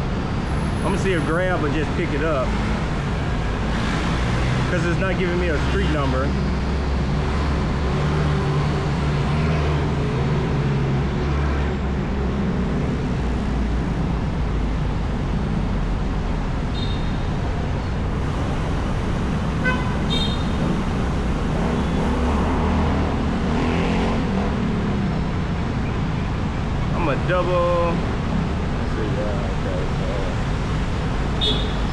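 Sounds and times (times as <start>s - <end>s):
car and bus engines: 0.0s - 31.9s
tyres on road: 0.0s - 31.9s
vehicle horn toot: 16.7s - 17.2s, 19.6s - 20.6s, 31.4s - 31.9s.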